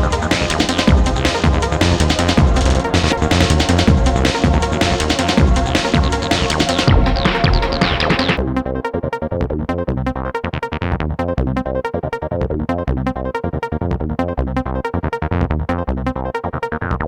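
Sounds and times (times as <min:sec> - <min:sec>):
electronic dance music: 0:00.0 - 0:08.4.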